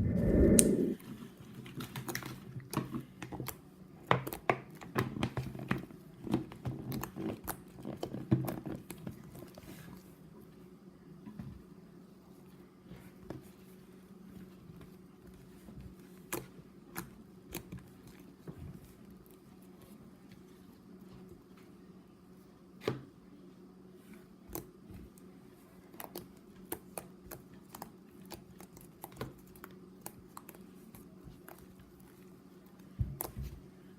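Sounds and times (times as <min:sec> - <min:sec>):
steady low hum: 0:00.0 - 0:01.0.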